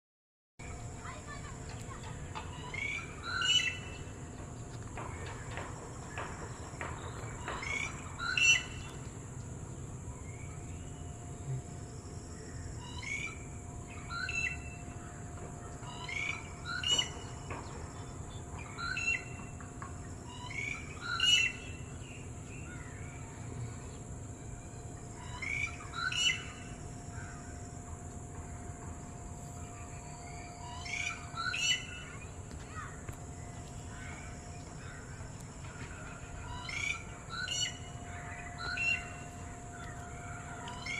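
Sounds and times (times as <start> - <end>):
bulbul calling: 29.6 - 32.3, 35.9 - 40.9.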